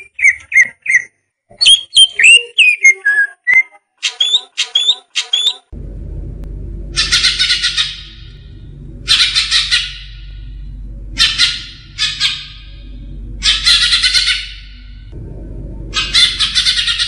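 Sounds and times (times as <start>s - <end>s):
steady low hum: 5.7s - 17.0s.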